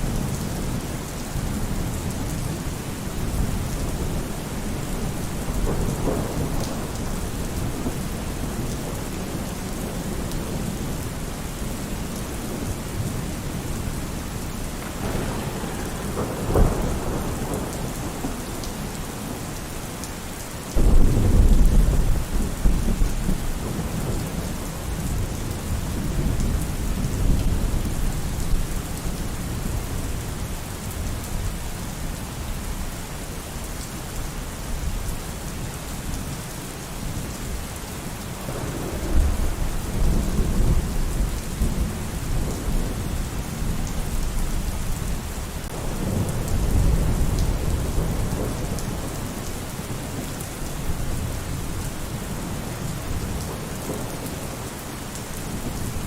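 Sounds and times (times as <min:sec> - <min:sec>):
steady rain: 0:00.0 - 0:56.0
thunder rumbling: 0:00.6 - 0:20.0, 0:20.8 - 0:28.6, 0:38.4 - 0:54.8.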